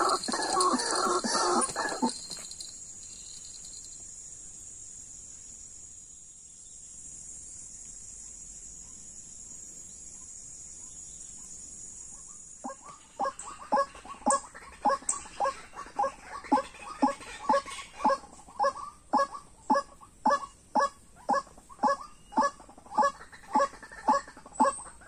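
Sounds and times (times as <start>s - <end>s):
sharp repeated animal calls: 0.0s - 3.8s
high-pitched insect chorus: 0.0s - 14.5s.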